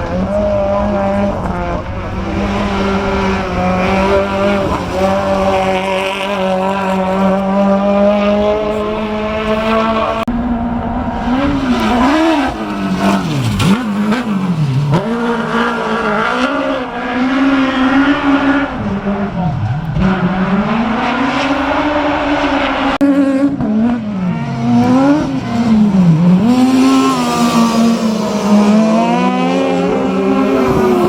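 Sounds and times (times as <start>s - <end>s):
racing car engines revving: 0.0s - 31.0s.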